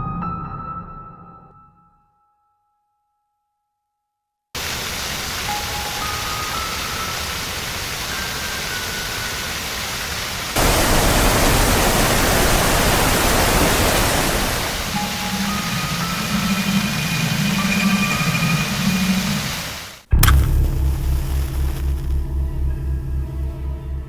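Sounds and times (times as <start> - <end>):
waterfall rushing: 4.6 - 22.2.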